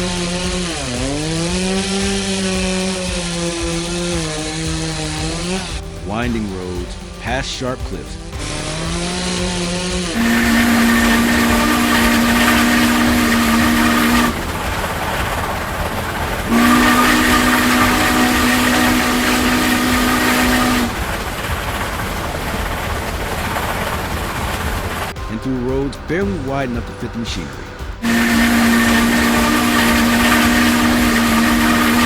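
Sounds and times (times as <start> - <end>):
truck air horn blasts: 9.7 - 22.6, 28.0 - 32.0
rumble and hiss of vehicles: 20.4 - 27.4.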